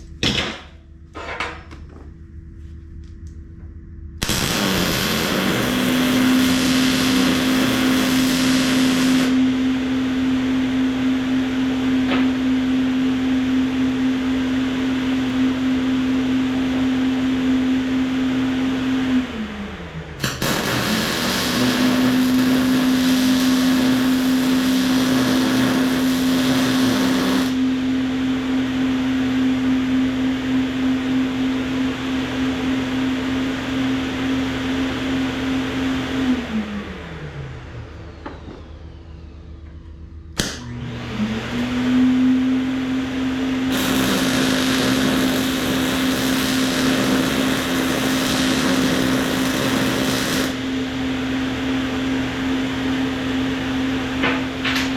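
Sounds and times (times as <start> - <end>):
welding hiss: 4.2 - 9.4, 20.2 - 27.6, 43.7 - 50.6
sharp click: 40.4 - 40.7.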